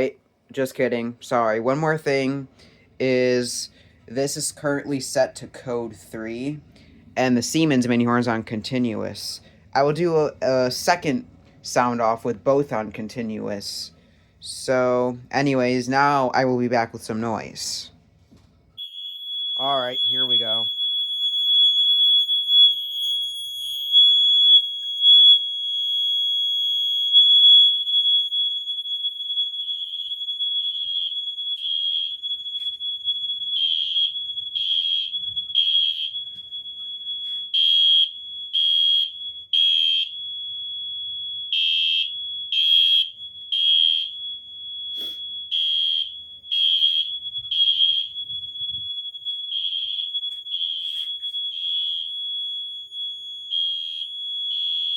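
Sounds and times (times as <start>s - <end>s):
steady high-pitched alarm tone: 18.8s - 54.9s.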